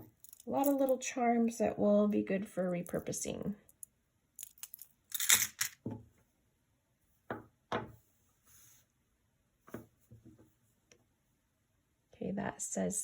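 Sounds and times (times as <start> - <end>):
metal jewelry clicking and clattering: 0.1 - 0.9, 3.7 - 5.8.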